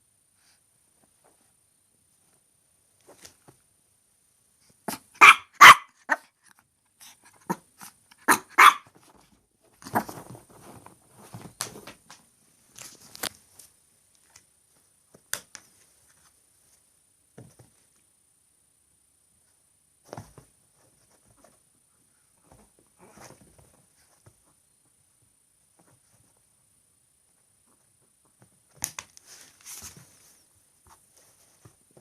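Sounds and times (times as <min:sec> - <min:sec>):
small dog yapping: 0:04.9 - 0:06.3, 0:08.2 - 0:08.9
dog scuffling: 0:08.6 - 0:13.7, 0:22.4 - 0:24.5.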